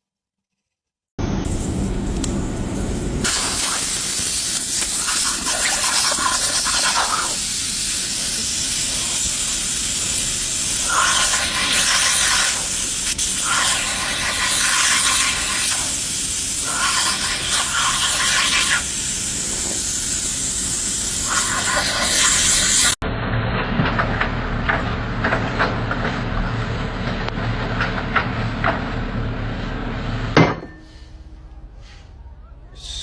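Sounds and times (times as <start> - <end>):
loud steady hissing: 1.2 - 23.1.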